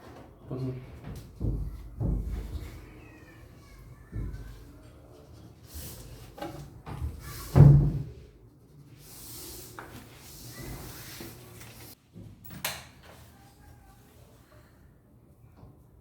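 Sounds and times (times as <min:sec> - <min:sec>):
soft sliding rub: 0:08.7 - 0:12.0.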